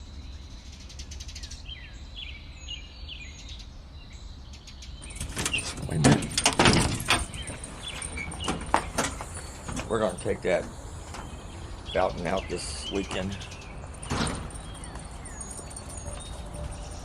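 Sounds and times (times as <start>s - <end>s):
low outdoor rumble: 0.0s - 17.0s
small birds chirping: 0.0s - 17.0s.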